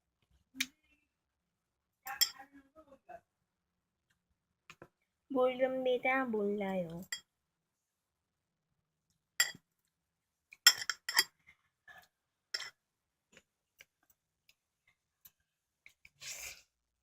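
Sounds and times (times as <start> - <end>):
utensils clinking against bowl: 10.7 - 11.3.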